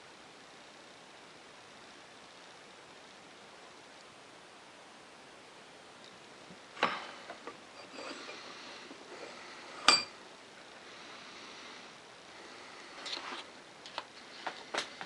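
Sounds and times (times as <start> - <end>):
metal tool clinking on hard surface: 9.8 - 10.2.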